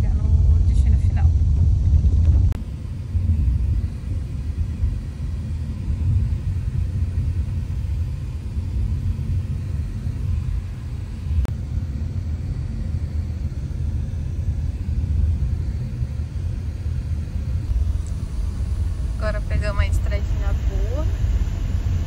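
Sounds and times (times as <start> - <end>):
car road noise rumble: 0.0 - 22.0.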